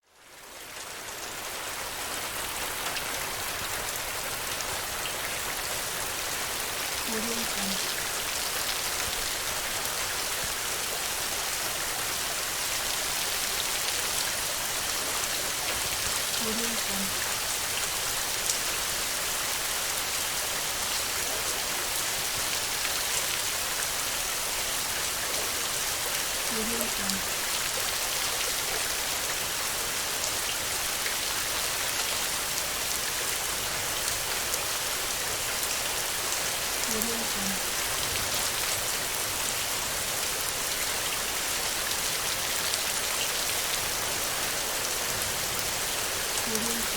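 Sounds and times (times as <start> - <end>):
individual raindrops: 0.0 - 46.9
steady rain falling: 0.0 - 46.9
raindrops ticking: 26.2 - 28.2, 45.5 - 46.9.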